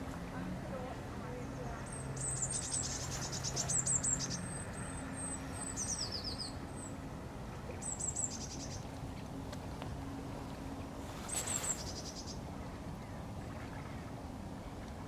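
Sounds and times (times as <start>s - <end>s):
low steady hum: 0.0s - 15.0s
small birds singing: 1.2s - 7.0s, 7.7s - 9.2s, 11.3s - 12.4s.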